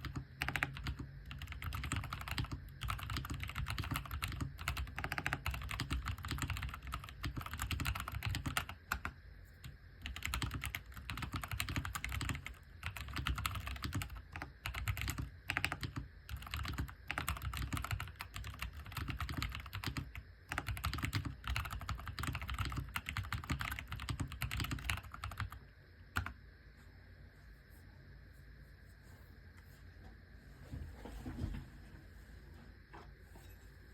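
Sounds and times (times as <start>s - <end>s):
mechanical keyboard typing: 0.0s - 9.2s, 10.0s - 25.6s.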